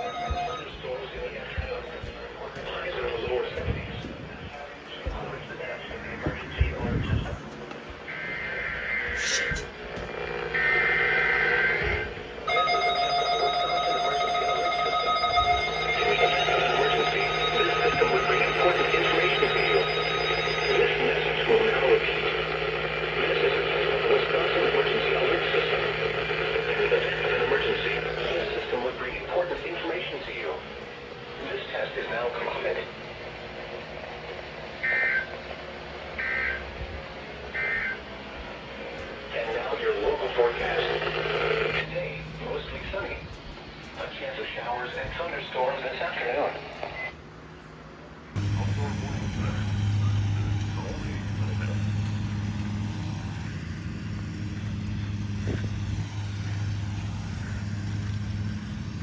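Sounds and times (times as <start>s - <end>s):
brief tone: 0.0s - 0.7s, 15.2s - 21.0s, 34.8s - 35.4s, 37.5s - 38.1s
steady multi-pitch alarm tone: 0.0s - 3.3s, 8.0s - 45.8s.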